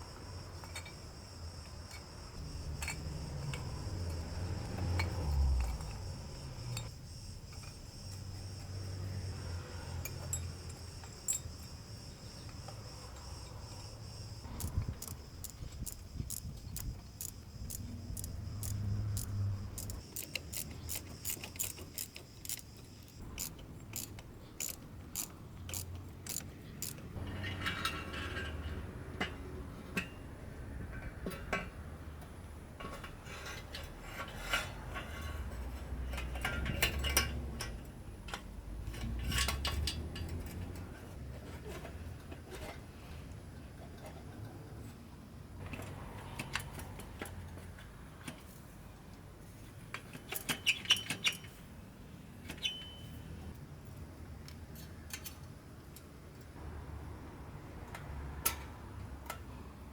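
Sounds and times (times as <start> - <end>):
ratchet wrench clicking: 14.5 - 27.2
tool handling clatter: 14.6 - 28.6.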